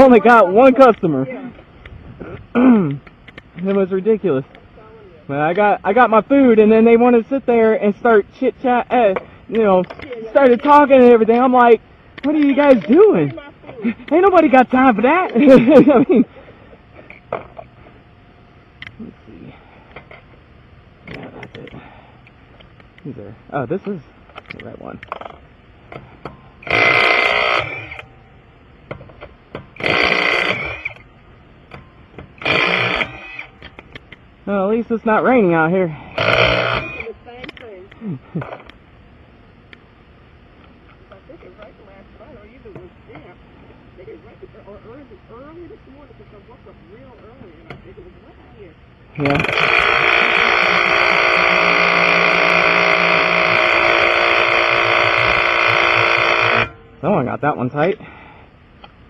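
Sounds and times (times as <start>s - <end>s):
impact wrench bursts: 25.9s - 28.1s, 28.9s - 31.0s, 31.7s - 34.0s, 36.0s - 37.1s, 49.1s - 56.9s.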